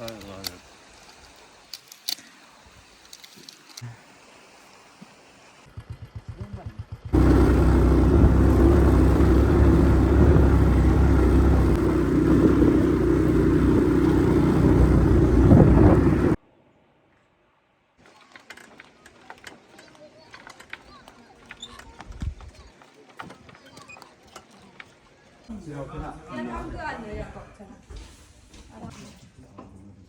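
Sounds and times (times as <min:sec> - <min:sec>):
small engine running: 0:05.7 - 0:16.4.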